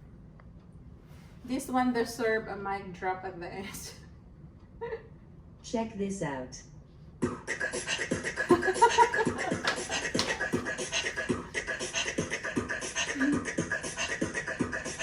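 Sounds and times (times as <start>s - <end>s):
beatbox from speaker: 7.2s - 15.0s.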